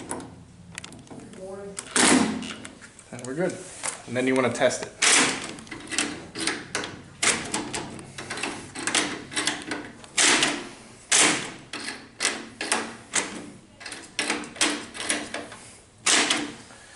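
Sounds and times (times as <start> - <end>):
door lock clicks and clunks: 0.0 - 1.2, 5.0 - 16.6.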